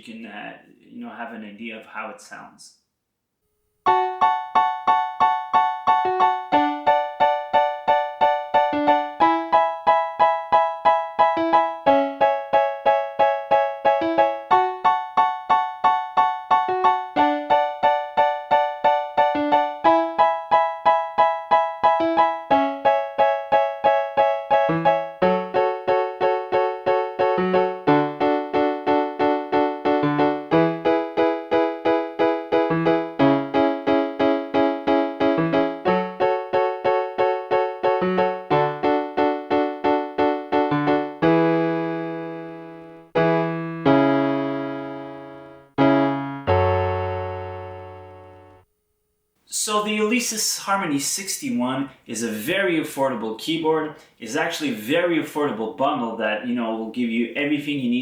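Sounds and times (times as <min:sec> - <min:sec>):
keyboard piano chords: 0:03.8 - 0:48.8.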